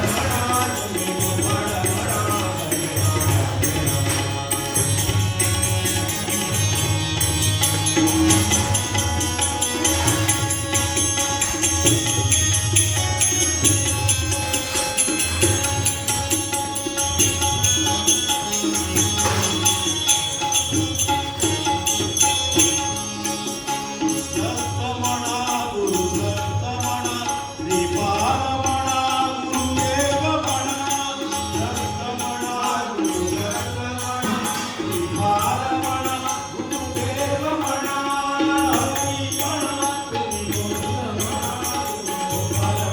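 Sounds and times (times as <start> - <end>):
chant-like melody bending in pitch: 0.0 - 42.9
music with low beat and percussion: 18.8 - 21.4.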